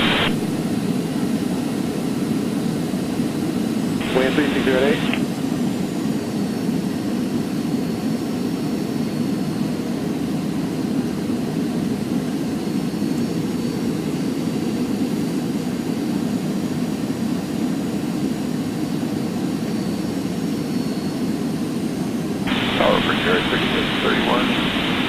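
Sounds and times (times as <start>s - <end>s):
faint high whine: 0.0s - 0.6s, 4.0s - 5.3s, 22.5s - 25.0s
airflow and jet engine rush: 0.0s - 25.0s.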